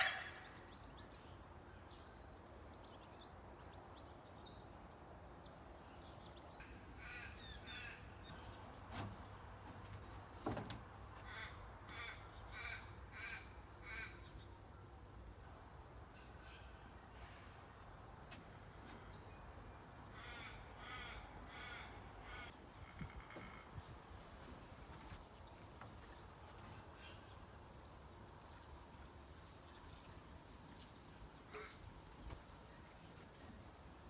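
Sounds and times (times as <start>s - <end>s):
crows cawing: 0.0s - 0.4s, 7.0s - 8.0s, 11.2s - 14.2s, 20.1s - 23.7s.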